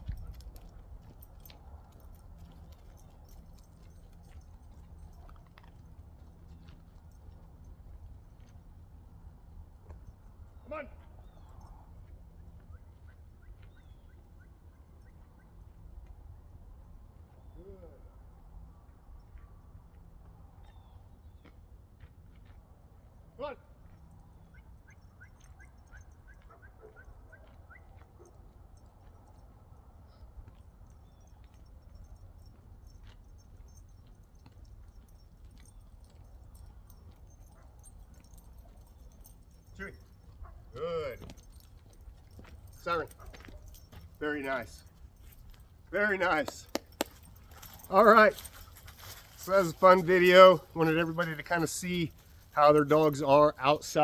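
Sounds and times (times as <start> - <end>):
footsteps on a driveway: 32.5 - 54.0.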